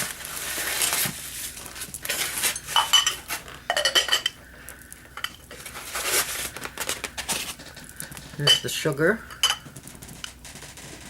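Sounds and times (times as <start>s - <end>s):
ceramic pieces clinking: 2.1s - 4.4s, 8.4s - 8.7s, 9.3s - 9.7s.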